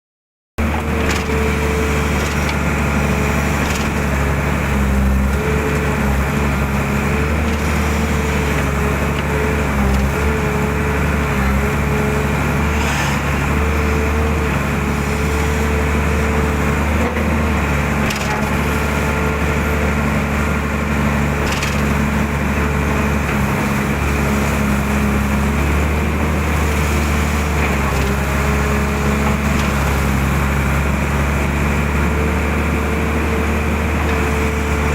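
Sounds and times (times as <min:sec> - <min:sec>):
excavator diesel engine: 0:00.6 - 0:34.9.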